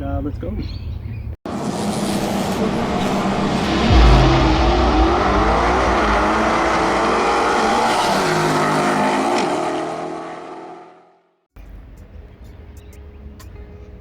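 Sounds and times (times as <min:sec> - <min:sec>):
car engine revving: 0:01.5 - 0:11.0.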